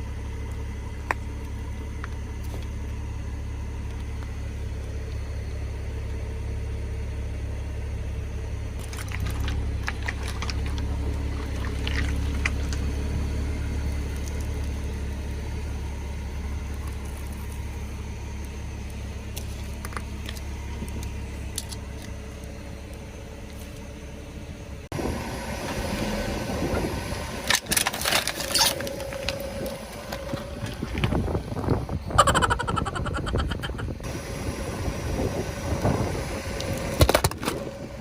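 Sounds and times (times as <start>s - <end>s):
car engine running: 0.0s - 38.0s
tyres crushing objects: 8.8s - 12.9s.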